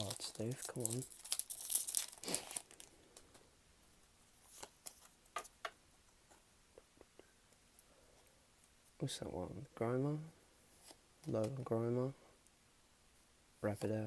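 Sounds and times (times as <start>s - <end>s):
foil wrapper crinkling and tearing: 0.0s - 3.0s
cards rustling: 0.0s - 3.4s.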